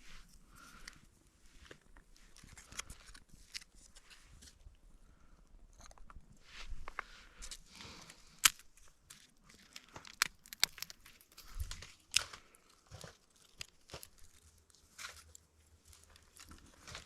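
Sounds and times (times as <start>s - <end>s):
rustling and crackling: 0.0s - 17.0s
sharp clicks and snaps: 6.8s - 12.4s.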